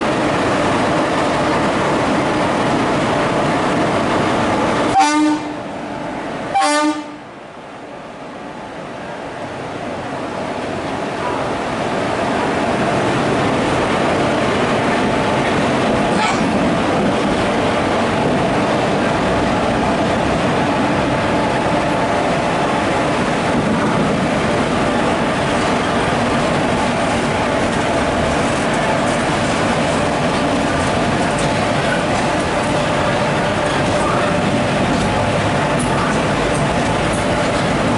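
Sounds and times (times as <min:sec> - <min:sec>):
train running noise: 0:00.0 - 0:37.9
locomotive horn blasts: 0:04.9 - 0:05.7, 0:06.5 - 0:07.3.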